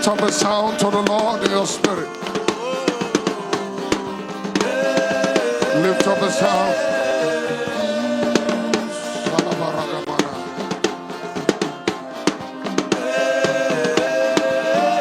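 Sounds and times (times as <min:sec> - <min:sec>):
sustained keyboard or vocal tones: 0:00.0 - 0:11.5
drum kit fills: 0:00.0 - 0:15.0.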